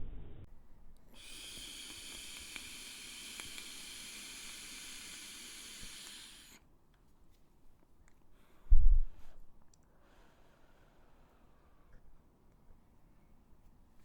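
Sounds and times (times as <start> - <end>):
vaping breath hiss: 1.0 - 6.7.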